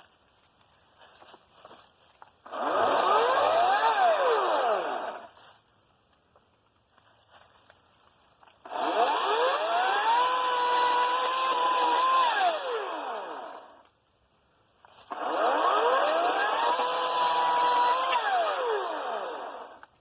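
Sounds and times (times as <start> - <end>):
battery chainsaw whine: 2.5 - 5.3, 8.6 - 13.8, 15.1 - 19.8.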